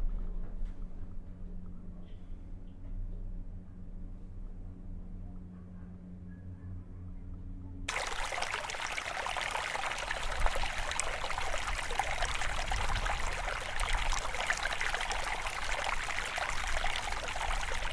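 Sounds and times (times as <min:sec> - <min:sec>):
creek flowing and trickling: 0:07.9 - 0:17.9.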